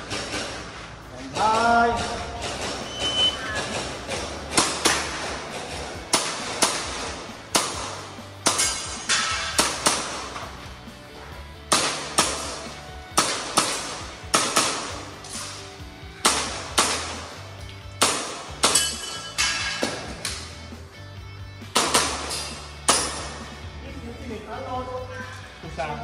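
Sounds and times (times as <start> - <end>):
background music: 0.0 - 26.0
airsoft pistol shots: 11.7 - 12.6, 13.2 - 15.0, 16.2 - 17.2.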